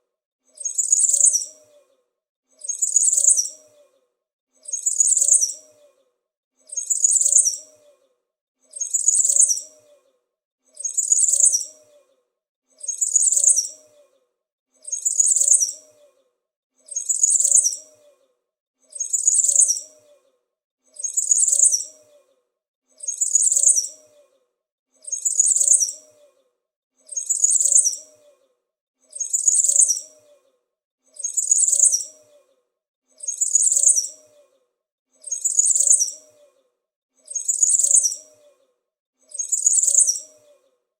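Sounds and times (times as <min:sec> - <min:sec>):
small bird chirping: 0:00.6 - 0:01.9, 0:02.6 - 0:04.0, 0:04.6 - 0:06.0, 0:06.6 - 0:08.1, 0:08.7 - 0:10.1, 0:10.7 - 0:12.1, 0:12.8 - 0:14.1, 0:14.8 - 0:16.2, 0:16.9 - 0:18.2, 0:19.0 - 0:20.3, 0:21.0 - 0:22.3, 0:23.0 - 0:24.3, 0:25.0 - 0:26.4, 0:27.0 - 0:28.4, 0:29.1 - 0:30.5, 0:31.1 - 0:32.5, 0:33.2 - 0:34.5, 0:35.2 - 0:36.6, 0:37.2 - 0:38.6, 0:39.2 - 0:40.7.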